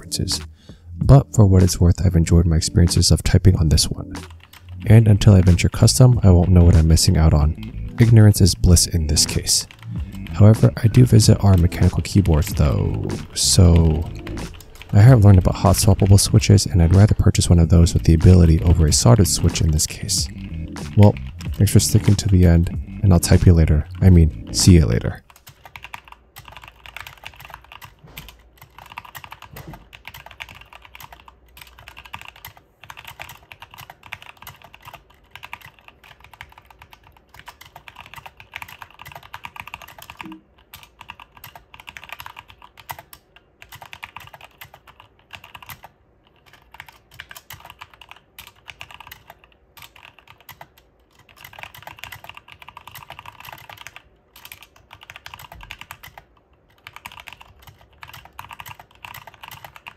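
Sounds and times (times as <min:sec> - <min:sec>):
mechanical keyboard typing: 0:04.2 - 0:07.4, 0:09.1 - 0:59.9.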